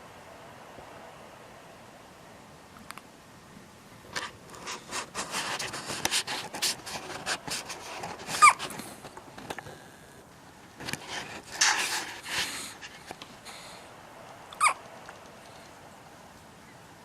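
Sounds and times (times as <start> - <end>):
dog squeak: 8.4 - 8.6, 14.6 - 14.8
dog hiccuping: 8.4 - 8.7, 14.5 - 14.8.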